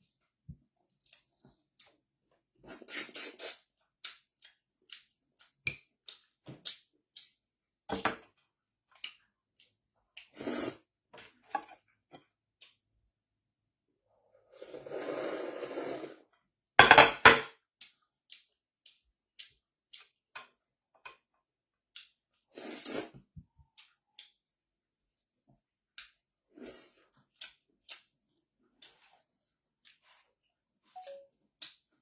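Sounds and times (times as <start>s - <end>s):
crunching and chewing: 25.9s - 30.6s.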